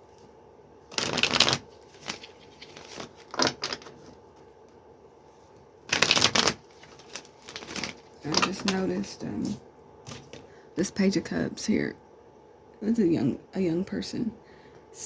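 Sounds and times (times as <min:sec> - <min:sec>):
cards flicking: 0:00.9 - 0:03.9, 0:05.9 - 0:08.8
cards being shuffled: 0:00.9 - 0:04.2, 0:05.9 - 0:10.5.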